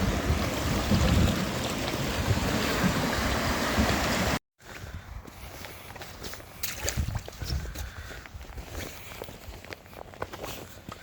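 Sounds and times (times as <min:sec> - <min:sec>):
surf on rocks: 0:00.0 - 0:04.4
wind buffeting microphone: 0:00.0 - 0:05.6, 0:06.6 - 0:09.2.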